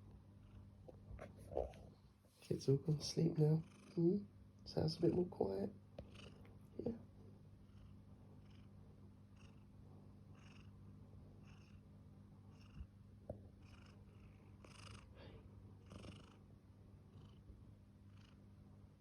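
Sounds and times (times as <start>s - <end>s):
cat purring: 0.3s - 19.0s
soft breathing: 13.7s - 16.3s.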